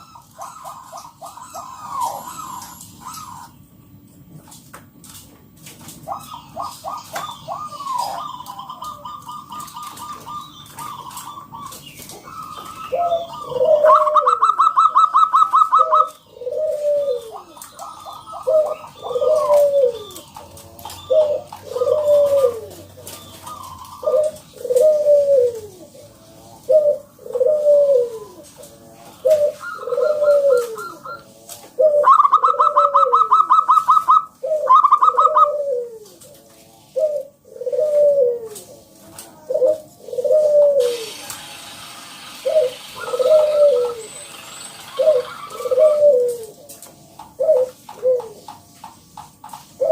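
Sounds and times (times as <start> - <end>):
dove cooing: 0.0 - 3.7, 5.8 - 48.8, 49.6 - 49.9
fast rattling bird notes: 40.8 - 46.8.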